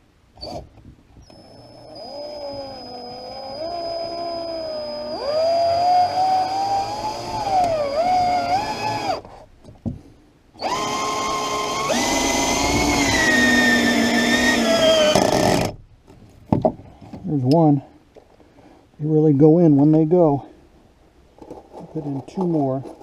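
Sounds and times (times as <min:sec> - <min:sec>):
power driver motor whining: 0:10.6 - 0:15.7.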